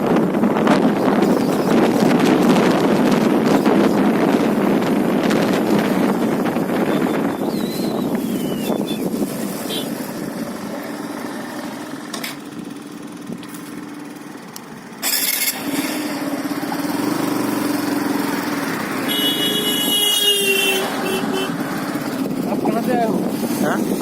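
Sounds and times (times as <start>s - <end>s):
motor engine running: 0.1s - 24.0s
horn-like tone: 9.6s - 10.0s, 19.0s - 21.6s.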